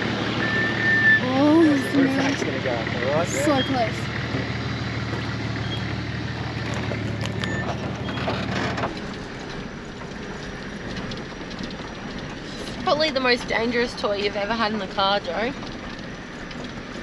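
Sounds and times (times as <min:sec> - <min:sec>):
vehicle engine running under load: 0:00.0 - 0:17.0
knocks and clatters: 0:04.2 - 0:17.0.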